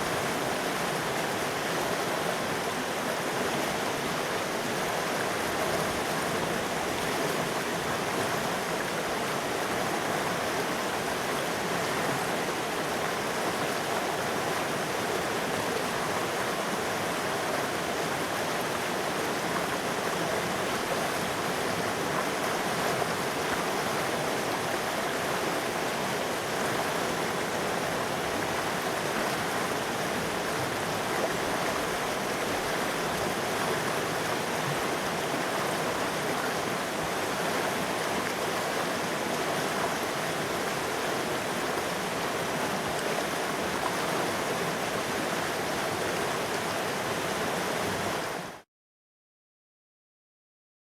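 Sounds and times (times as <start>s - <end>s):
river flowing over rocks: 0.0s - 48.6s.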